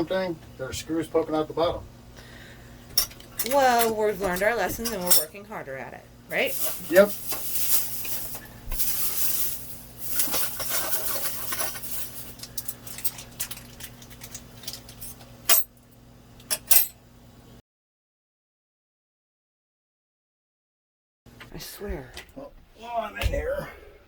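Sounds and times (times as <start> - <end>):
metal hardware clinking and rattling: 3.0 - 5.4, 6.3 - 15.7, 16.5 - 17.0.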